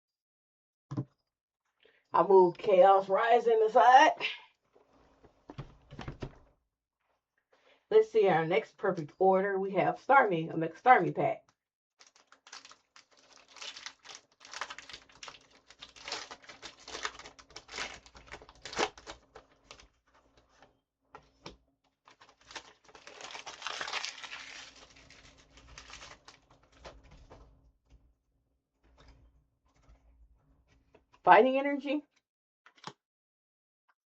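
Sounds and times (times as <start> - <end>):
foil wrapper crinkling: 12.0 - 20.7, 22.0 - 27.4.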